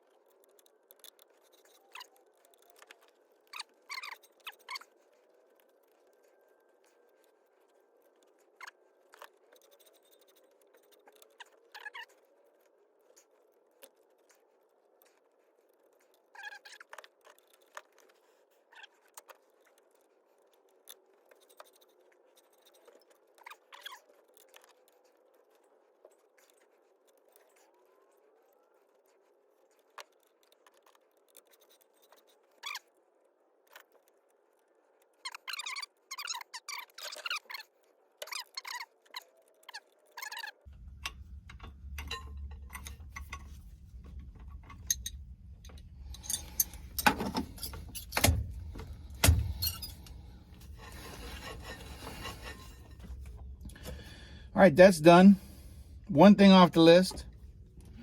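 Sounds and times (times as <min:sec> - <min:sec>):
metallic wrench clicks and scrapes: 0:00.1 - 0:06.2, 0:08.1 - 0:12.2, 0:38.2 - 0:53.9.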